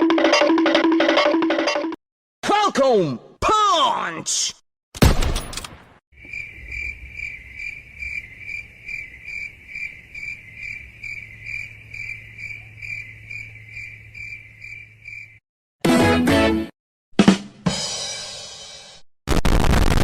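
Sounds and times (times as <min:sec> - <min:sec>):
crickets chirping: 0:06.2 - 0:15.4.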